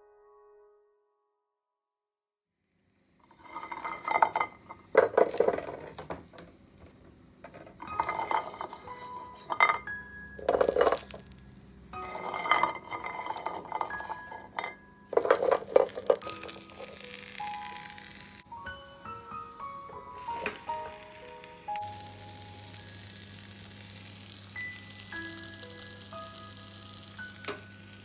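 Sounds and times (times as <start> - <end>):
dishes and cutlery clattering: 3.3 - 6.4, 7.4 - 11.3, 12.0 - 16.9.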